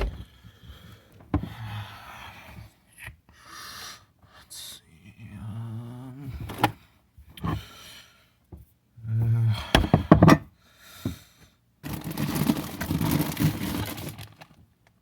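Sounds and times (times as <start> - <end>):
knocks and clicks in refrigerator: 0.0 - 0.2, 9.7 - 10.4
rustling and clattering: 11.8 - 14.6.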